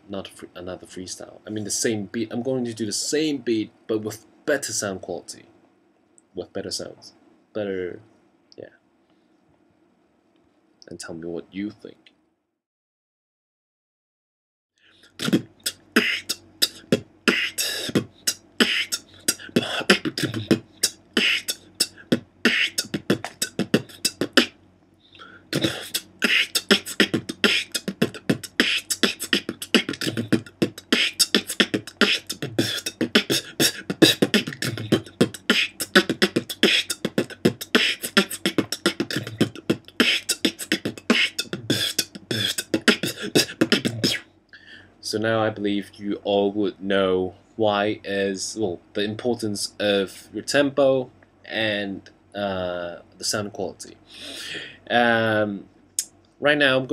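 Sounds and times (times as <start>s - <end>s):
beatboxing: 14.9s - 44.2s, 54.2s - 55.2s.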